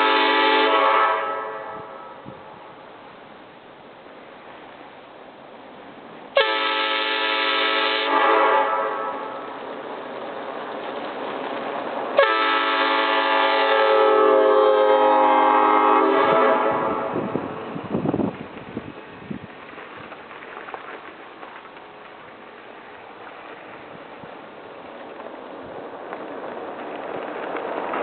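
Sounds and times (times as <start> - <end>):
air horn chord: 0.0 - 2.2, 6.4 - 9.4, 12.2 - 17.3.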